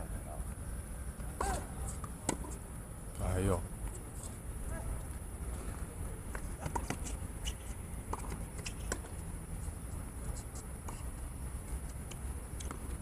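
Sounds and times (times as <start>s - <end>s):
racket hitting ball: 1.2s - 2.6s
shoes squeaking on court: 1.2s - 2.7s, 3.8s - 13.0s.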